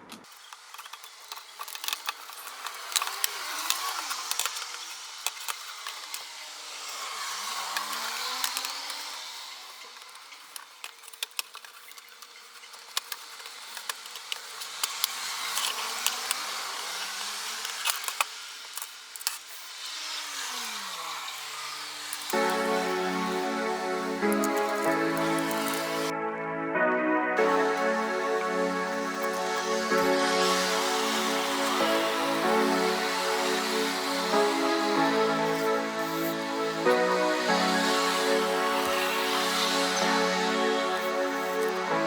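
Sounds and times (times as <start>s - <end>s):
tool rasping on wood: 0.3s - 26.1s
small clicks and knocks: 9.8s - 19.7s.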